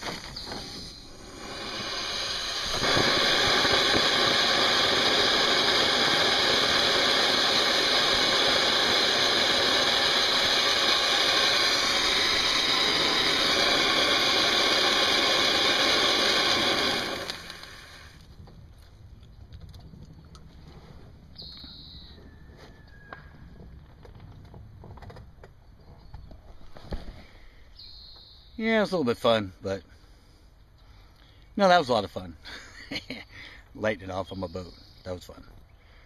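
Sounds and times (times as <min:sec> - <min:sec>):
fountain firework hissing: 0:00.0 - 0:18.3.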